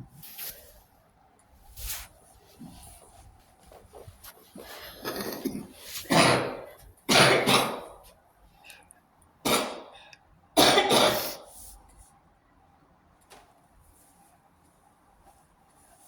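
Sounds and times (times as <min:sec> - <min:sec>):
person coughing: 0:05.0 - 0:08.0, 0:09.5 - 0:10.0, 0:10.6 - 0:11.5.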